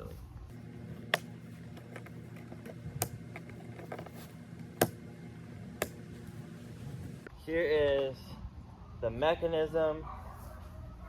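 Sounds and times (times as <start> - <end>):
handling noise and clicks: 1.0 - 5.0.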